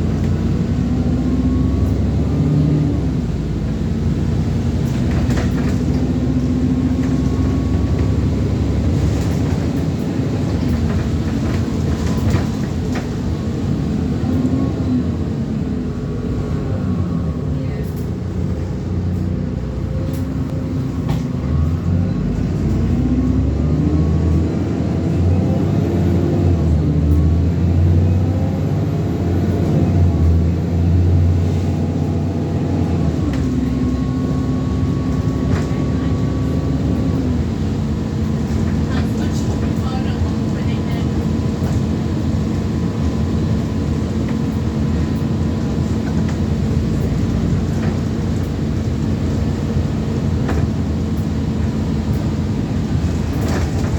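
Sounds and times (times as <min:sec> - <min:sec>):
bus engine and transmission: 0:00.0 - 0:53.9.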